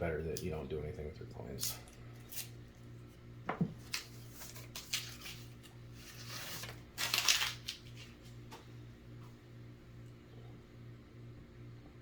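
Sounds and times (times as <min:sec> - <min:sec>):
low steady hum: 0:00.0 - 0:12.0
rustling scrape: 0:04.2 - 0:08.1.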